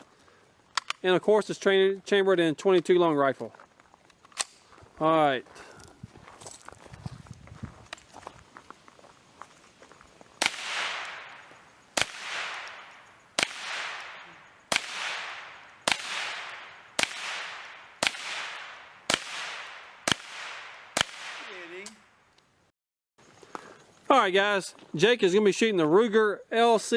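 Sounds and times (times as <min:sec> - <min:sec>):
rifle shots echoing: 0:10.4 - 0:22.0.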